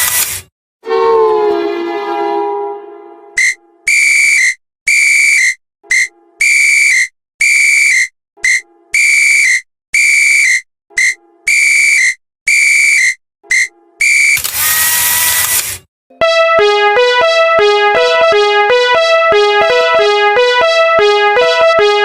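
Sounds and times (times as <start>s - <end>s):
whistle blasts: 3.4s - 15.2s.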